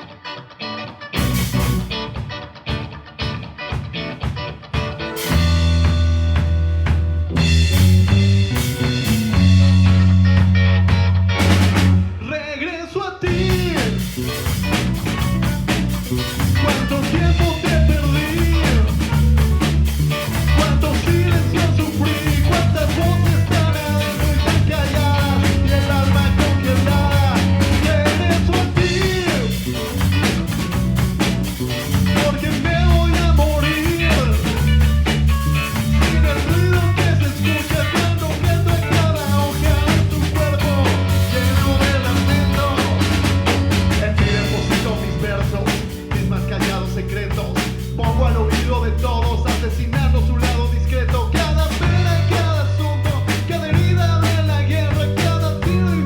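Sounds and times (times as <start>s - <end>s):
bass guitar: 0.0s - 56.0s
electric guitar: 0.0s - 56.0s
drum kit: 1.2s - 12.3s, 13.3s - 56.0s
person singing lead vocal: 12.2s - 14.2s, 16.5s - 19.2s, 20.5s - 30.0s, 32.0s - 34.8s, 35.8s - 56.0s.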